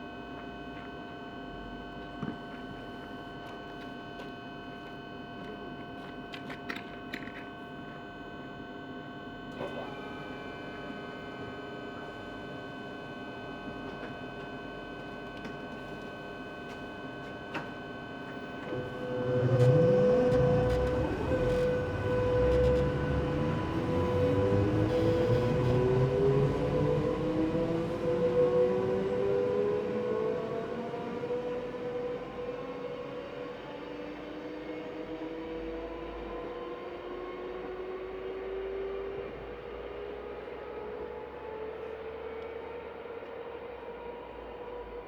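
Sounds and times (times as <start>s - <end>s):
train electrical hum: 0.0s - 37.3s
rising motor whine: 18.5s - 41.8s.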